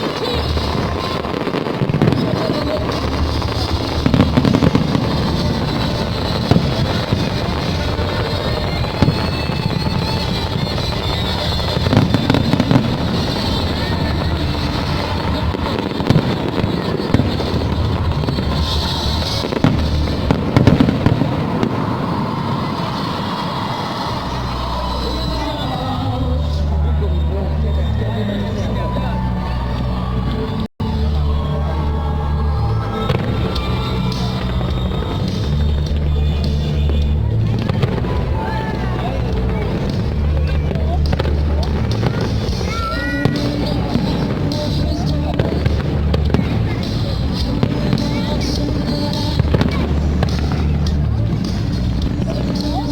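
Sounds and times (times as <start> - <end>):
fireworks fizzing hiss: 0.0 - 25.5
fireworks bangs: 0.0 - 52.9
fireworks crackle and rumble: 0.0 - 52.9
loud music with deep bass: 0.0 - 52.9.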